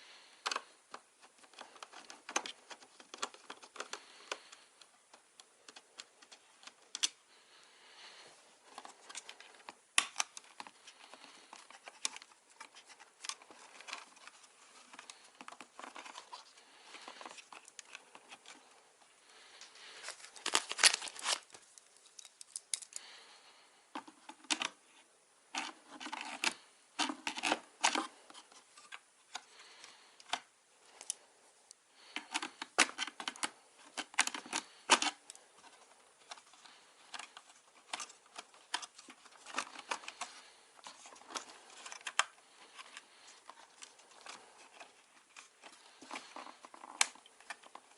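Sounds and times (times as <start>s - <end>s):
scraping and rustling: 5.7s - 24.8s, 32.0s - 47.9s.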